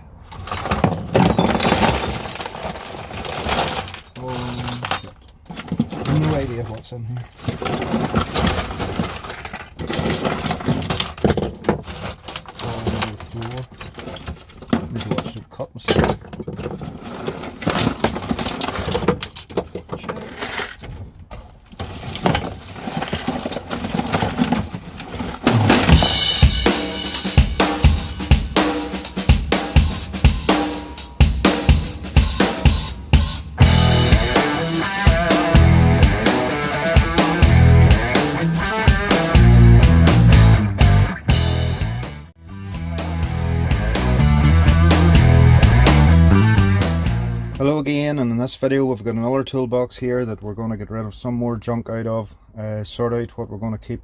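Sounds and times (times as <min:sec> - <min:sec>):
hand tools clattering together: 0:00.3 - 0:21.0, 0:21.7 - 0:26.4.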